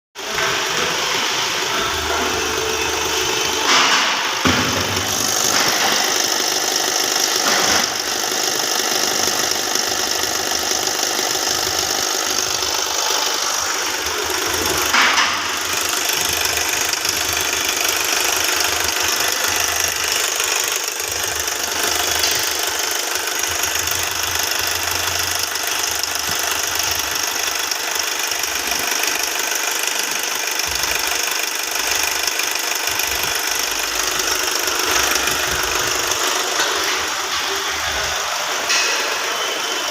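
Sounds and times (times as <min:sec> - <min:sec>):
car engine running: 0:00.2 - 0:39.9.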